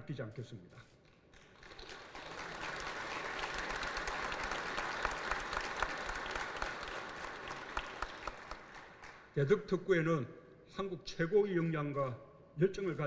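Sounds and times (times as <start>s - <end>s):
audience applause: 1.5s - 9.3s.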